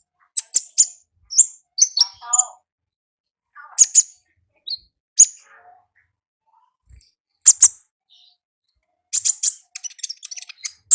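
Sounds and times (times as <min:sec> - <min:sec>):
sunbird ticking chirps: 0:09.1 - 0:10.9.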